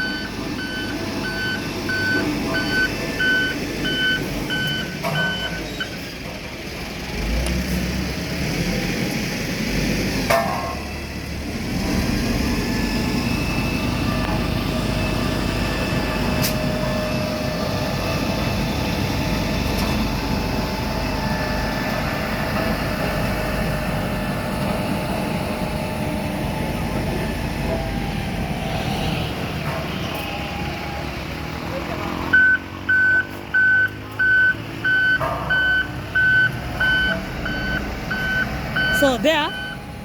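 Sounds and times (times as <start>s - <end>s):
diesel machinery rumbling: 0.0s - 40.0s.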